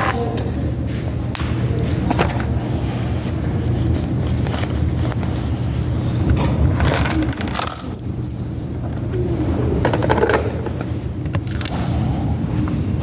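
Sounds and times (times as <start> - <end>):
light metallic clinks and jingling: 7.6 - 8.5.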